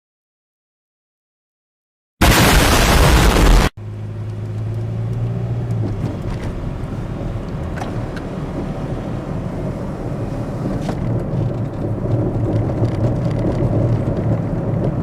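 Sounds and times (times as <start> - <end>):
loud rushing noise: 2.2 - 3.8
car driving hum: 2.7 - 15.0.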